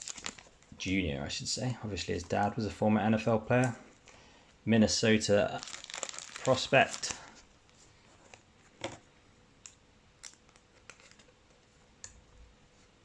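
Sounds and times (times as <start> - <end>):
trading cards and sleeves rustling: 5.1 - 9.0.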